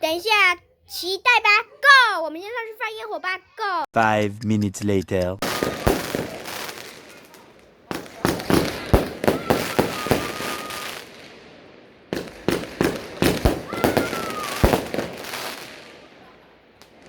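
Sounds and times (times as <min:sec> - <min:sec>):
high firework whistle: 0:05.4 - 0:11.3, 0:12.1 - 0:17.0
firework bangs and crackles: 0:05.4 - 0:17.0.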